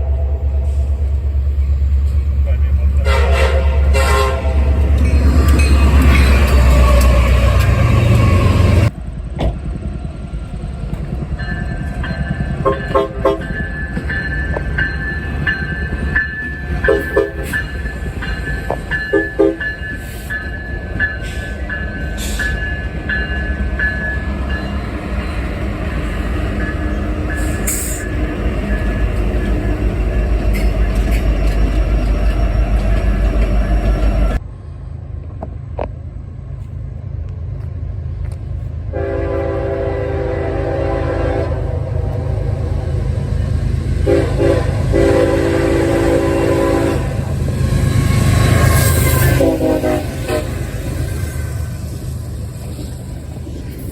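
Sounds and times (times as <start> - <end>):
passing train rumble: 0.0 - 53.9
train horn blasts: 3.0 - 5.1, 12.6 - 13.6, 16.8 - 17.6, 19.1 - 19.8, 38.9 - 42.9, 44.0 - 47.4, 48.2 - 51.1.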